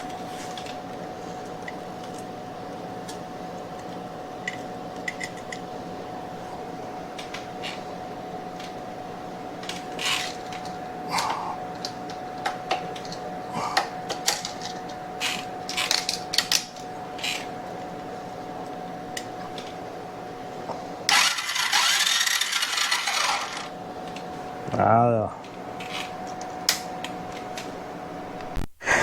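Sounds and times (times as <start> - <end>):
faint steady hum: 0.0 - 29.0
engine cranking without starting: 21.1 - 23.7.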